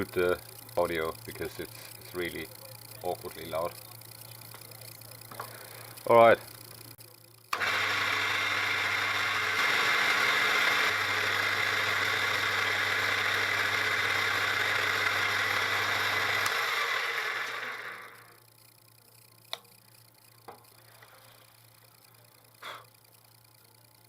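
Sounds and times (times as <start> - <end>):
milling machine whining: 7.5 - 18.4.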